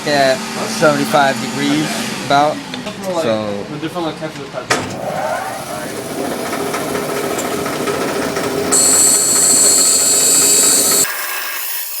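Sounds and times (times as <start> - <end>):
bandsaw running: 5.0 - 12.0
bandsaw cutting high-pitched rasp: 5.2 - 12.0.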